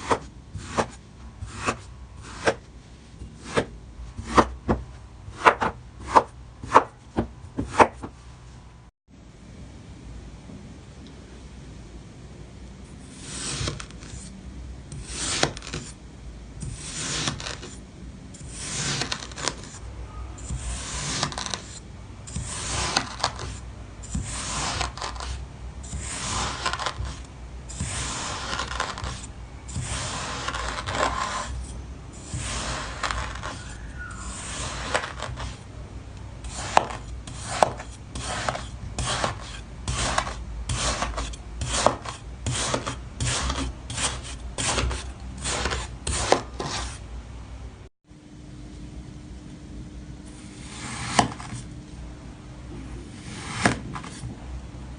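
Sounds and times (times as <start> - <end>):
kinetic sand being cut: 22.3 - 31.6, 32.2 - 33.6.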